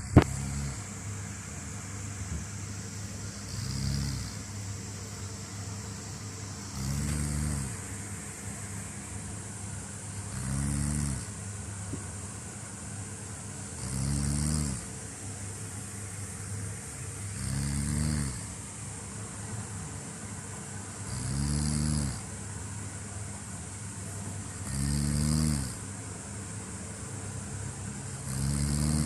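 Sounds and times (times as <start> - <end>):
person snoring: 0.0 - 0.9, 3.5 - 4.4, 6.7 - 7.8, 10.3 - 11.3, 13.8 - 14.9, 17.3 - 18.5, 21.1 - 22.3, 24.6 - 25.8, 28.3 - 29.0
steady background hum: 0.0 - 29.0.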